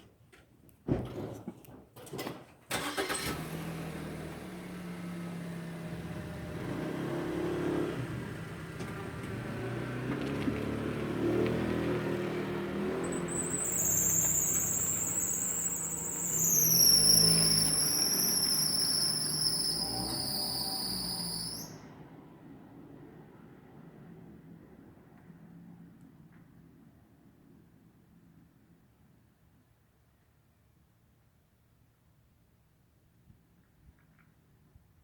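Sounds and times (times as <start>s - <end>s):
high-pitched squeal: 13.0s - 21.9s.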